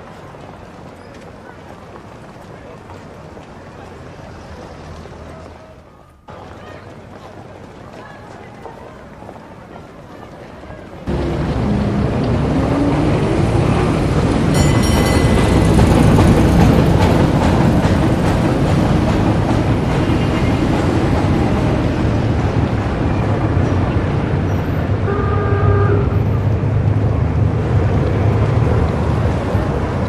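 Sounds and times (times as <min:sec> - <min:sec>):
loud low rumble of traffic: 0:11.0 - 0:30.0
car horn: 0:25.0 - 0:26.6.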